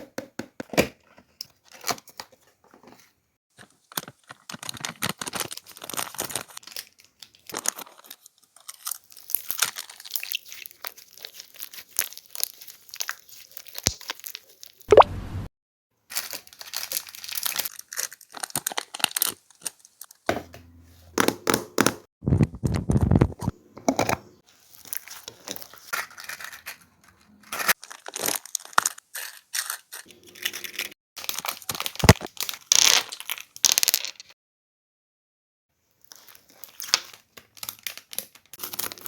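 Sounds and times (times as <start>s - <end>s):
slime squishing and crackling: 4.3s - 15.0s, 16.2s - 20.0s, 31.2s - 34.0s.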